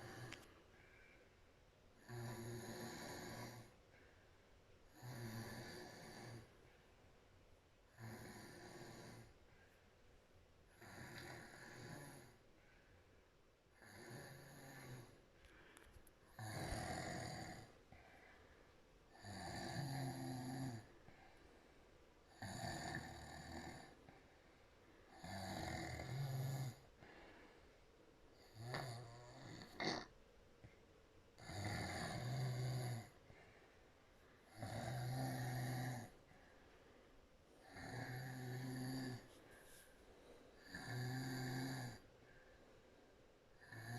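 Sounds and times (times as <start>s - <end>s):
woman snoring: 0.0s - 0.5s, 2.0s - 3.8s, 4.9s - 6.5s, 7.9s - 9.4s, 10.7s - 12.4s, 13.8s - 15.2s, 16.3s - 18.1s, 19.1s - 21.0s, 22.3s - 24.2s, 25.1s - 26.9s, 28.4s - 30.1s, 31.4s - 33.2s, 34.4s - 36.2s, 37.6s - 39.4s, 40.6s - 42.1s, 43.6s - 43.9s.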